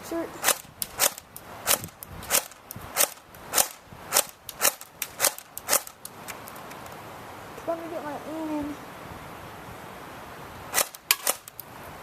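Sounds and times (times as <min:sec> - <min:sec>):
airsoft gun shots: 0:00.4 - 0:06.0, 0:10.7 - 0:11.6.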